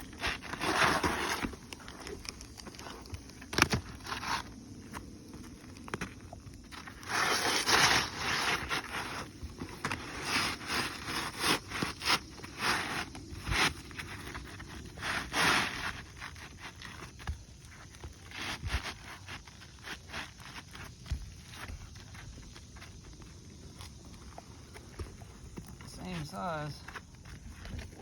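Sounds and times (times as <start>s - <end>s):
roof shingle scraping and crackling: 0.0s - 28.0s.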